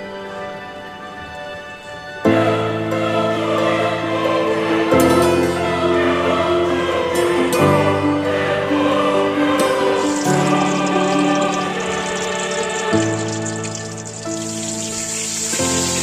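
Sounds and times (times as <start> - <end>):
sustained choral chords: 0.0 - 16.0.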